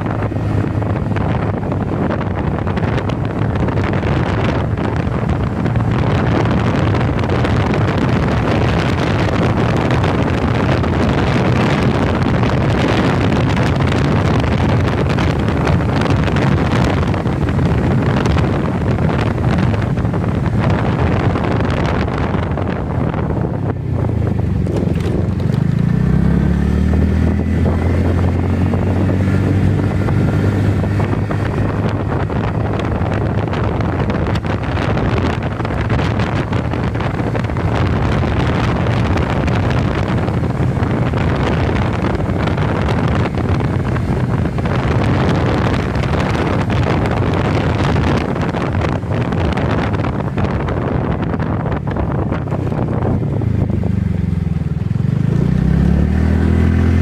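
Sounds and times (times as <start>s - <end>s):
motorcycle engine accelerating: 0.0s - 57.0s
wind noise on microphone: 0.0s - 57.0s.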